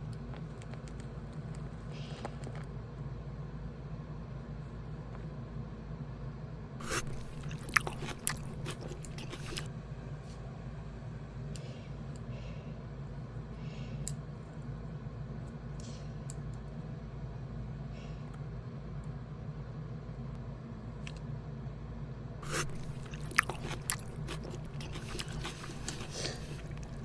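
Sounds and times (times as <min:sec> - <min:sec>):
steady low hum: 0:03.1 - 0:27.0
crisp crunches and crinkles: 0:06.8 - 0:09.7, 0:22.4 - 0:27.0.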